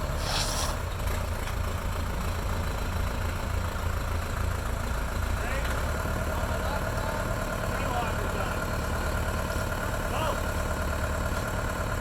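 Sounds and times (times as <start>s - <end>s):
vehicle engine idling: 0.0s - 12.0s
brief hiss: 0.2s - 0.8s.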